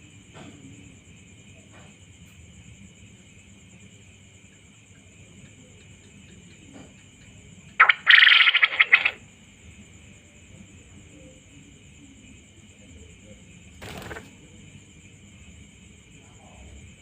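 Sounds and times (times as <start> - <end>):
high insect drone: 0.0 - 17.0
quail calling: 7.8 - 9.2.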